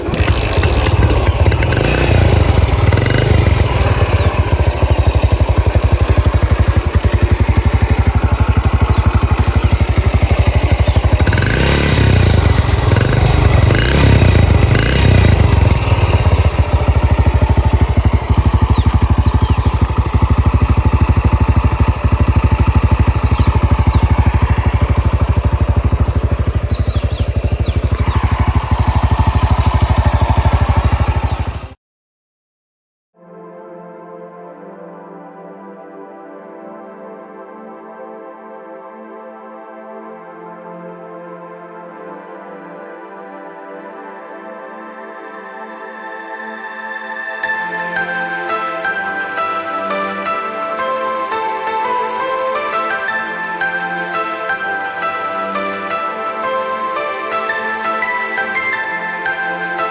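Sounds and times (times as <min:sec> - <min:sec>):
engine throttle blips: 0:00.0 - 0:31.8
two-stroke engine idling: 0:00.0 - 0:31.8.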